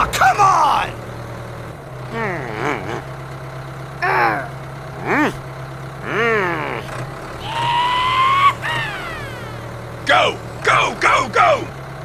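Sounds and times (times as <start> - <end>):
low engine hum: 0.0 - 12.0
vocal cries sliding in pitch: 7.4 - 9.8.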